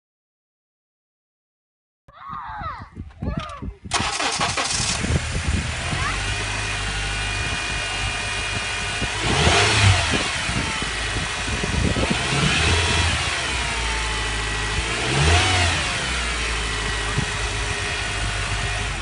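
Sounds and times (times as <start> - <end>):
car engine running: 3.9 - 19.0
power steering pump whine: 3.9 - 19.0.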